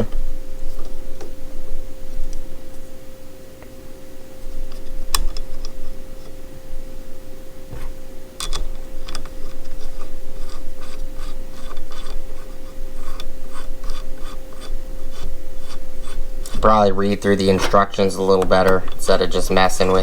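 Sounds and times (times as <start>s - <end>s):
faint steady hum: 0.0s - 20.0s
clicks and scrapes of parts: 7.7s - 16.6s.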